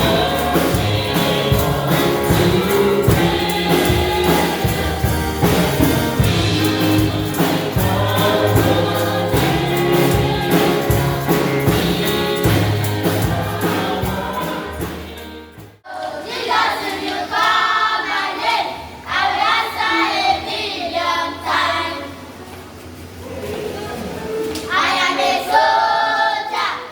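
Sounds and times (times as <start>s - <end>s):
band with strong bass line: 0.0s - 15.8s
choir singing gospel music: 0.0s - 22.3s, 24.0s - 26.9s.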